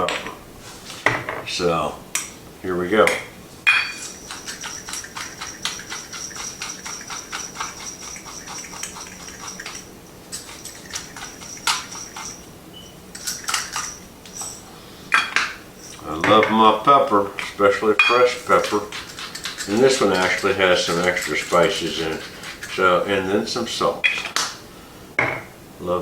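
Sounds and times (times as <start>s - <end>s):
pepper grinder grinding: 3.6s - 12.5s, 13.1s - 14.7s, 15.8s - 24.6s.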